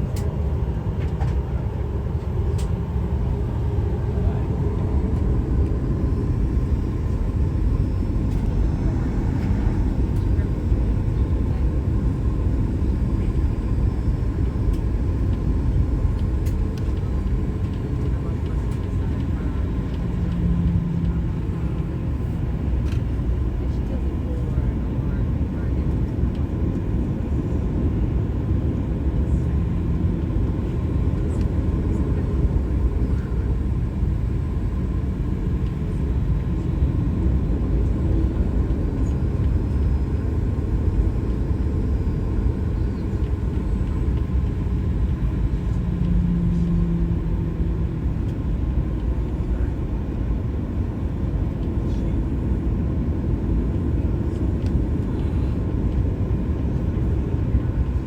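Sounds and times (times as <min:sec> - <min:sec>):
airplane cabin engine rumble: 0:00.0 - 0:58.0.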